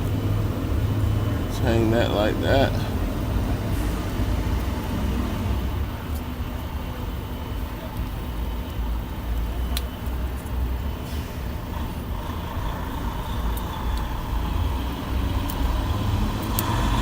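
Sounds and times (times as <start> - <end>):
vehicle engine rumble: 0.0 - 17.0
sharp light clicks: 15.4 - 15.8.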